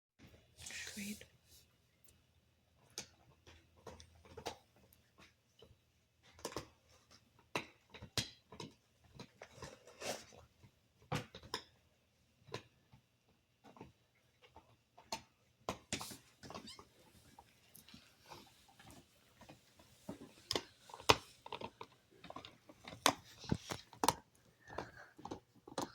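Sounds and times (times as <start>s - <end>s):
dog chewing: 16.0s - 25.9s.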